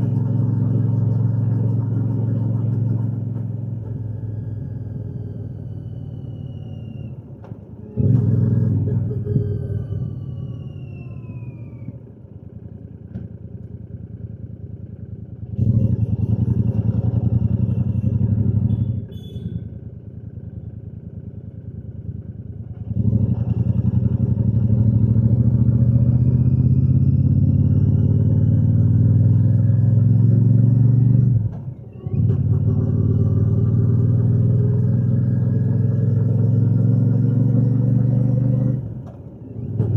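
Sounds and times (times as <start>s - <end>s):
motorcycle engine and exhaust: 0.0s - 39.9s.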